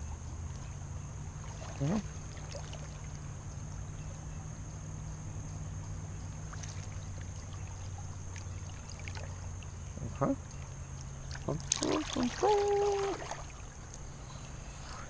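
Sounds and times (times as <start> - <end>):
creek water flowing: 0.1 - 15.0
faint ticks: 0.4 - 0.8, 3.0 - 11.8, 13.8 - 14.4.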